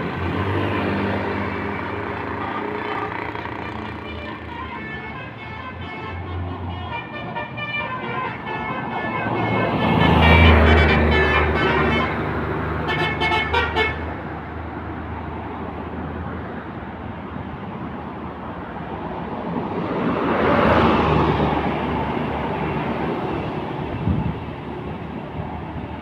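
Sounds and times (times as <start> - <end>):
vehicle passing: 0.0 - 16.8, 19.2 - 25.9
traffic noise: 0.0 - 26.0
multi-tone musical horn toots: 1.7 - 14.0.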